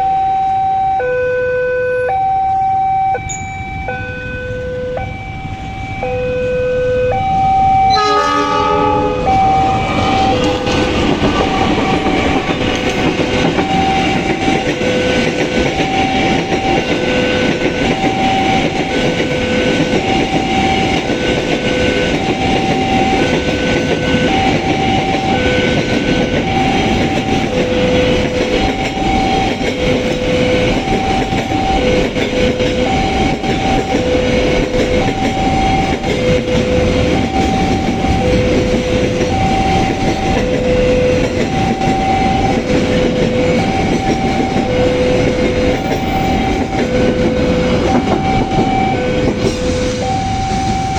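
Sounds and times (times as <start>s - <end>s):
level crossing two-tone alarm: 0.0s - 50.9s
train wheels rumbling on rail: 3.2s - 50.9s
train horn: 7.9s - 15.2s, 44.5s - 50.9s.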